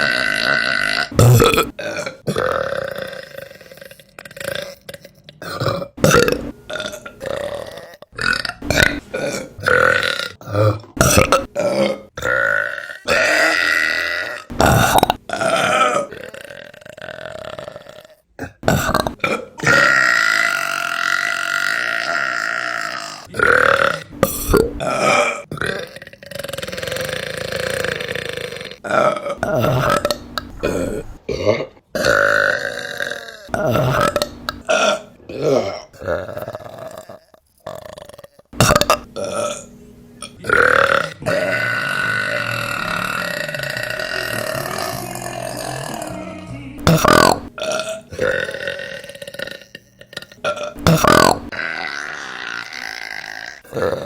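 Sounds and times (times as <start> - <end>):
women burping: 0.0 - 54.0.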